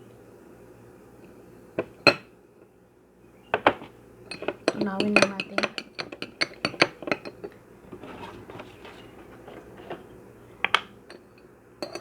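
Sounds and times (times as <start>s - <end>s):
spoon clinking against container: 4.3s - 7.6s, 11.1s - 12.0s.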